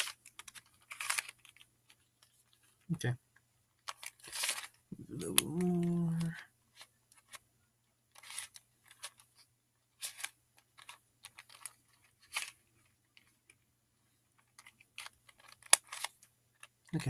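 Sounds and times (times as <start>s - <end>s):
scraping rattles of puzzle layers: 0.0s - 2.8s, 3.8s - 7.4s, 8.1s - 13.6s, 14.3s - 17.0s
puzzle cube layers clicking: 14.4s - 17.0s.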